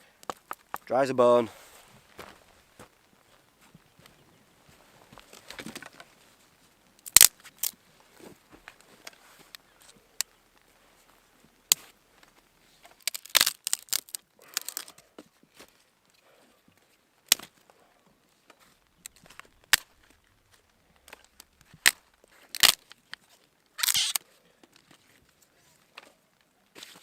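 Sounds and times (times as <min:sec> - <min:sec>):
twigs crackling and rustling: 0:00.0 - 0:27.0
twigs snapping: 0:05.1 - 0:06.1, 0:06.9 - 0:15.0, 0:17.2 - 0:17.7, 0:18.5 - 0:25.0.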